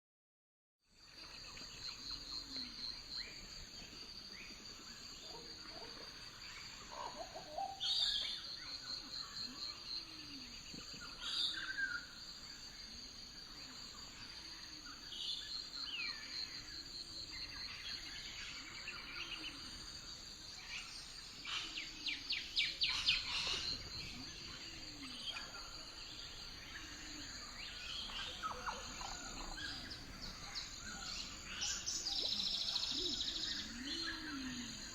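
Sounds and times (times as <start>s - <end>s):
birds chirping and singing: 20.7s - 34.9s.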